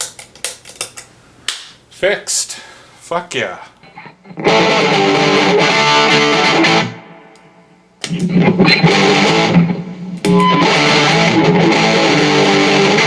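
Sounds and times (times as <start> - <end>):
distorted electric guitar chords: 3.8 - 13.0.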